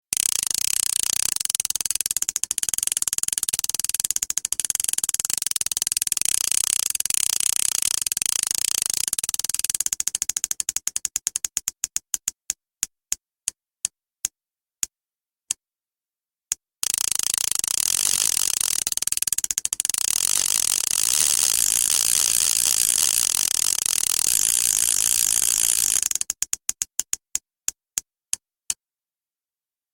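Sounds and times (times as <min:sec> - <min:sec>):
fishing reel ratchet clicking: 0:00.1 - 0:11.5, 0:16.8 - 0:26.8.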